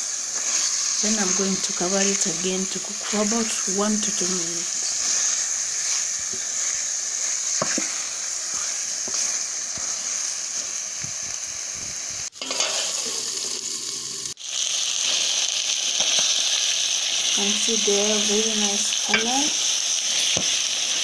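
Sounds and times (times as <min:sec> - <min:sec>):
chicken sizzling in oil: 0:00.0 - 0:21.0
stirring knocks: 0:07.5 - 0:08.0.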